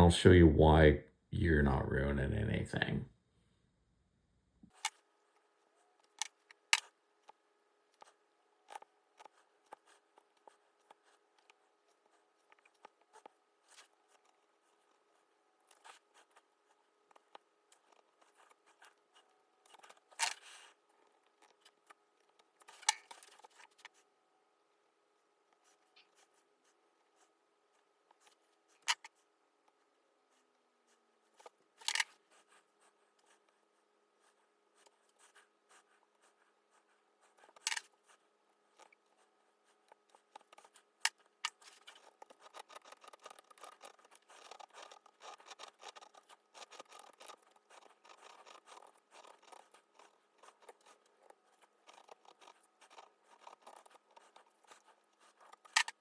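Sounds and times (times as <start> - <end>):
carving tools scraping wood: 39.7 - 56.0.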